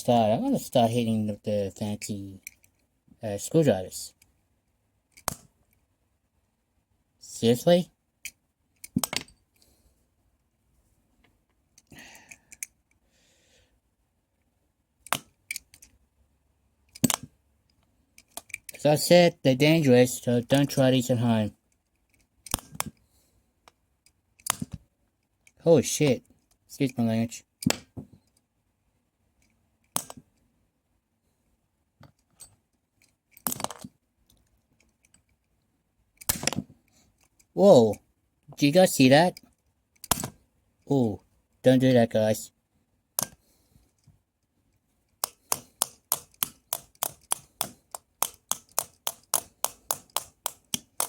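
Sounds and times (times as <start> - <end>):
screwdriver striking plastic: 45.2 - 51.0.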